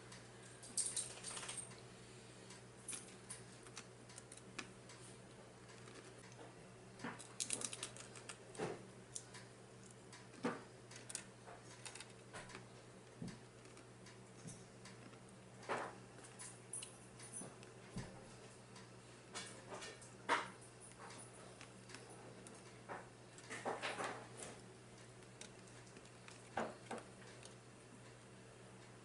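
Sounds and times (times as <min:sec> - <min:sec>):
steady low hum: 0:00.0 - 0:29.0
eating crunches: 0:05.6 - 0:06.4, 0:07.1 - 0:08.6, 0:09.2 - 0:16.4.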